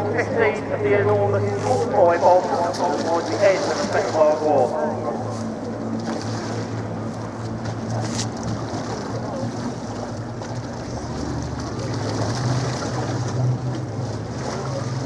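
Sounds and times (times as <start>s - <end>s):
propeller aircraft engines droning: 0.0s - 15.0s.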